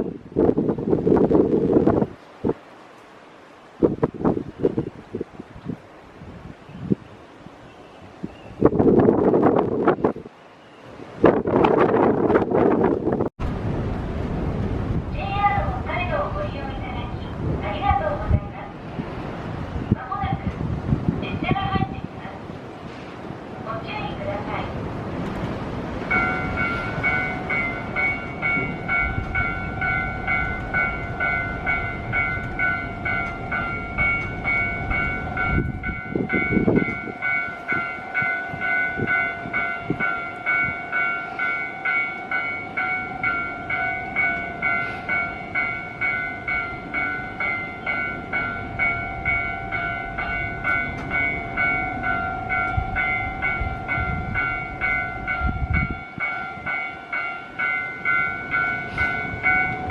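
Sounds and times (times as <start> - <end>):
wind buffeting microphone: 0.0 - 59.9
level crossing bell ringing: 26.1 - 59.9.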